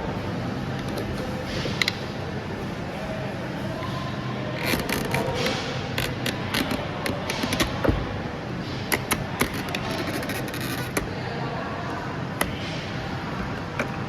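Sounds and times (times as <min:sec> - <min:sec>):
steady low hum: 0:00.0 - 0:14.0
sharp mechanical clicks and knocks: 0:04.6 - 0:08.1, 0:08.8 - 0:11.2, 0:12.4 - 0:12.9.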